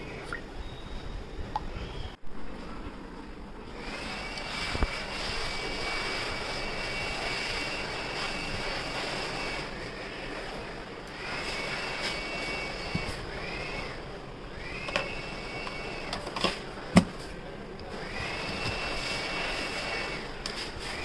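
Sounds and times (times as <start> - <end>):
electric motor whining: 3.8 - 16.4, 17.9 - 21.0.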